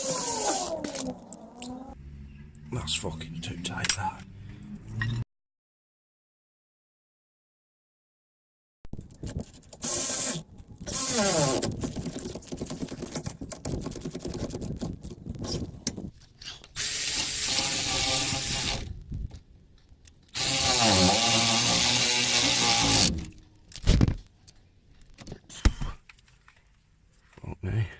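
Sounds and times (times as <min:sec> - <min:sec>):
power drill running: 0:00.0 - 0:01.0, 0:09.8 - 0:11.6, 0:16.8 - 0:18.9, 0:20.4 - 0:23.4.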